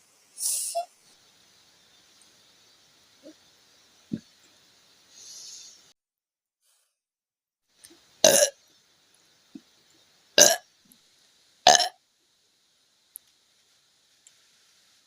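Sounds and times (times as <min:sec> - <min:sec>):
soft hiss: 0:00.0 - 0:06.0, 0:07.7 - 0:15.0
woman burping loudly: 0:08.2 - 0:08.5, 0:10.4 - 0:10.6, 0:11.7 - 0:11.9.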